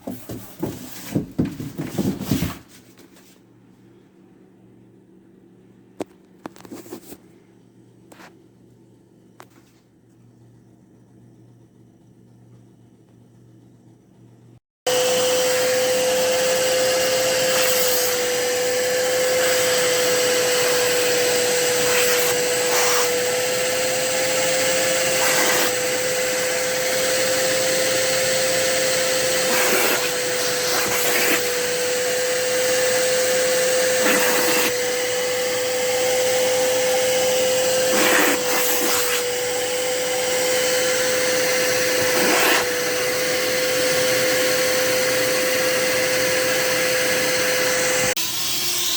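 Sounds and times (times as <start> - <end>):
carpet cleaner suction motor whine: 14.8 - 48.9.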